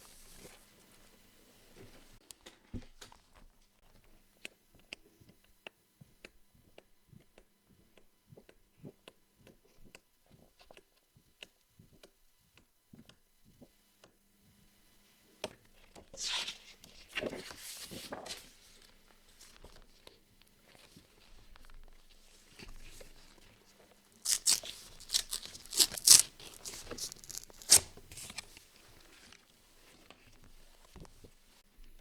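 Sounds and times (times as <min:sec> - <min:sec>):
paper rustling and scraping: 0:16.2 - 0:18.9, 0:24.2 - 0:29.4.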